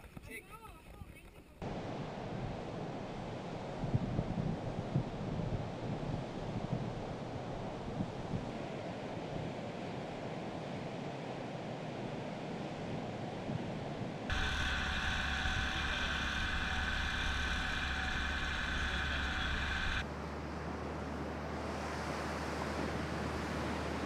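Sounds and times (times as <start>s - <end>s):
wind noise on microphone: 0.0s - 20.0s
sea noise: 1.6s - 13.4s, 14.2s - 24.0s
drone propellers whining: 14.3s - 20.0s.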